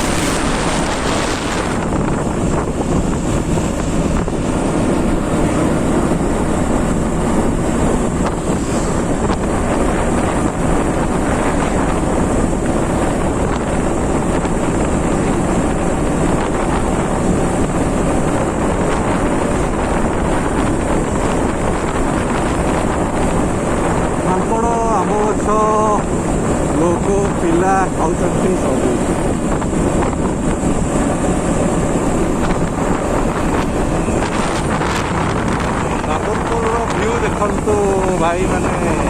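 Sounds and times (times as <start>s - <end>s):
motorcycle running: 0.0s - 39.0s
wind rush on microphone: 0.0s - 39.0s.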